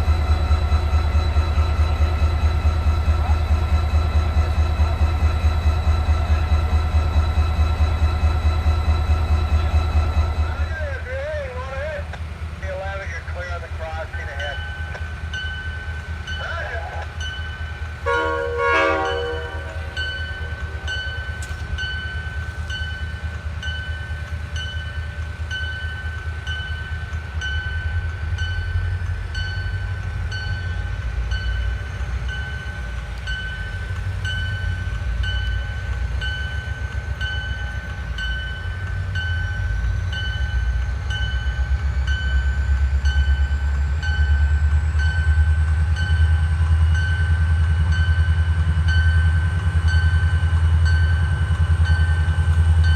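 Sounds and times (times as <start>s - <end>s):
diesel locomotive rumble: 0.0s - 52.9s
diesel train horn blast: 18.0s - 20.0s.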